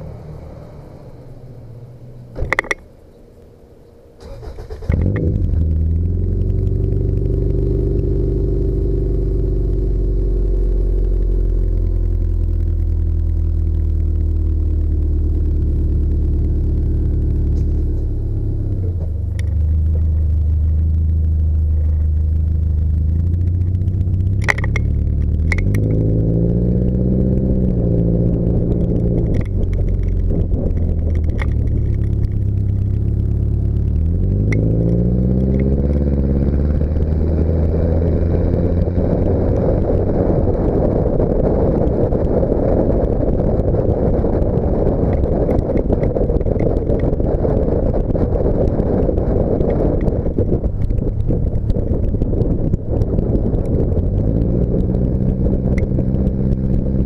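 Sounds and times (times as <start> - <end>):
car engine exhaust note: 0.0 - 57.0
wind and road noise: 0.0 - 57.0
sharp clicks: 2.4 - 3.5, 18.7 - 36.1, 44.0 - 57.0.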